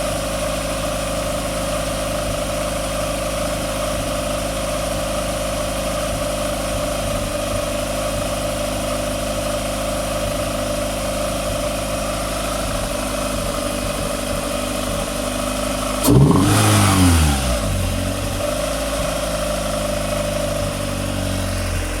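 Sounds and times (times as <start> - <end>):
car engine idling with misfire: 0.0 - 22.0
engine revving: 15.9 - 22.0.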